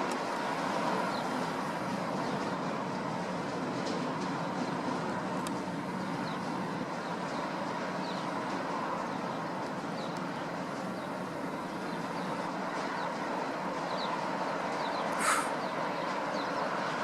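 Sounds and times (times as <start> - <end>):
aircraft engines droning: 0.0 - 17.0
faint bird chirps: 14.8 - 15.8.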